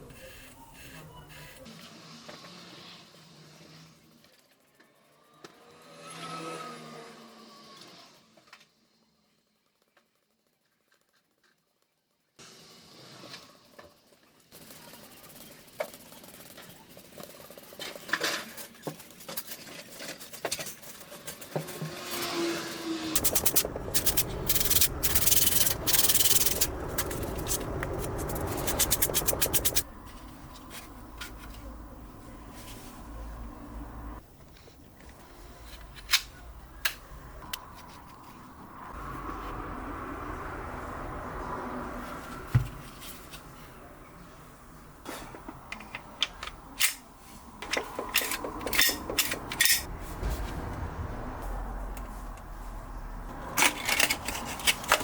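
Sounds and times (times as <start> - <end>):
hand sanding strokes: 23.2 - 29.9.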